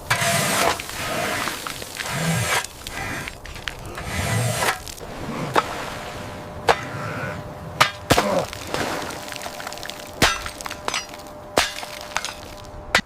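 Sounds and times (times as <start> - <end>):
splintering crunching: 0.0 - 5.8, 6.6 - 13.0
sharp cracking knocks: 7.8 - 13.0.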